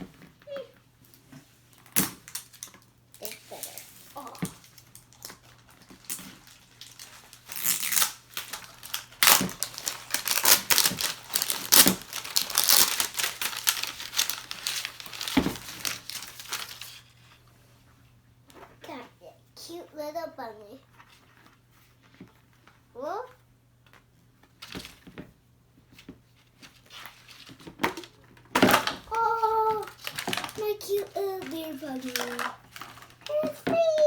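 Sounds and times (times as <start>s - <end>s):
plastic wrap crinkling and tearing: 1.7s - 17.2s, 26.9s - 34.0s.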